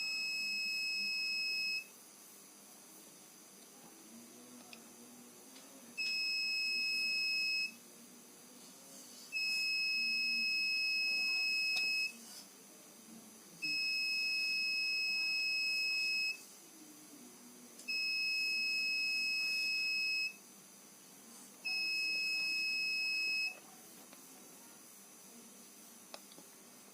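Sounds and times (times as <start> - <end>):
high-pitched alarm buzzer: 0.0 - 1.9, 6.0 - 7.8, 9.4 - 12.2, 13.6 - 16.4, 17.9 - 20.4, 21.7 - 23.6.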